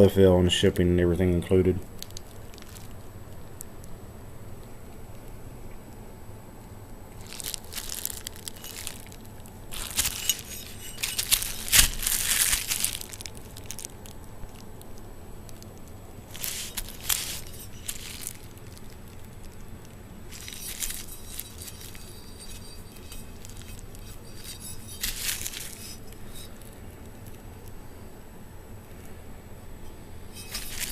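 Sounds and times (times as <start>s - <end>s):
packaging crinkling: 1.9s - 3.1s, 7.1s - 27.4s, 30.4s - 30.9s.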